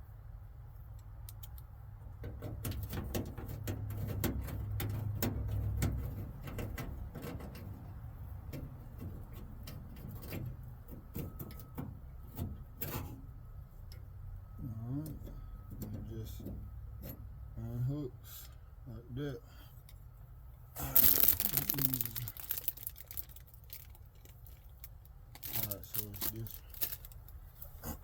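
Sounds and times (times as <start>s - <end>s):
low steady rumble: 20.0s - 28.0s.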